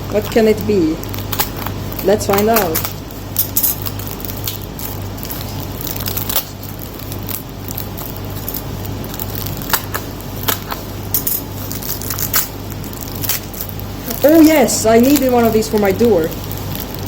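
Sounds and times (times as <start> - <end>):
package wrapping crinkling: 0.0 - 17.0.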